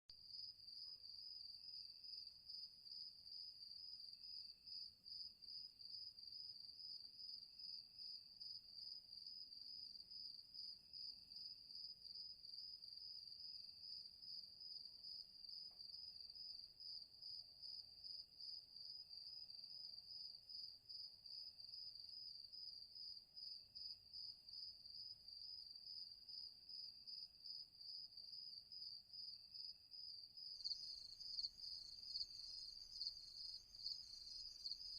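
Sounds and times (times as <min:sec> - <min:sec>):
crickets trilling: 0:30.6 - 0:34.9.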